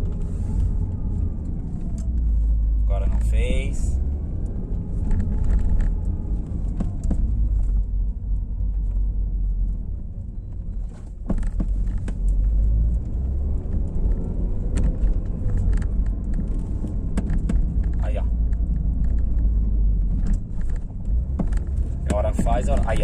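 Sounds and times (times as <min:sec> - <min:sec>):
car road and engine rumble: 0:00.0 - 0:23.0.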